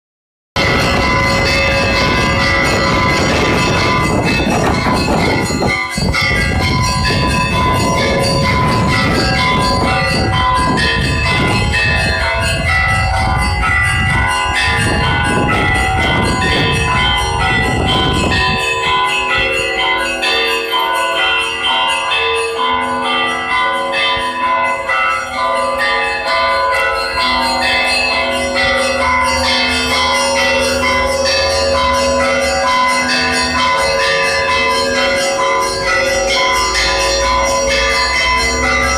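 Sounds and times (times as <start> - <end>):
church bells ringing a peal: 0.6 - 38.9.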